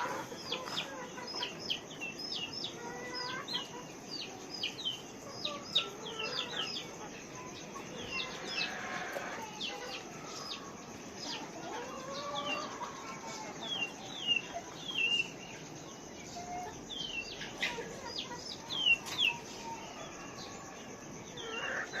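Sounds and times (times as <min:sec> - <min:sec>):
chickens clucking: 0:00.0 - 0:22.0
chicks peeping: 0:00.0 - 0:22.0.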